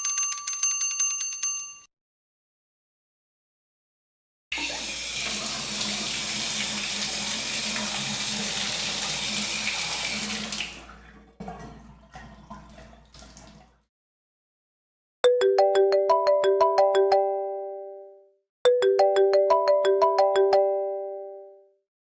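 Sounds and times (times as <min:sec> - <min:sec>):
shower spray running: 0:04.6 - 0:10.9
water drips and trickles: 0:04.6 - 0:13.9.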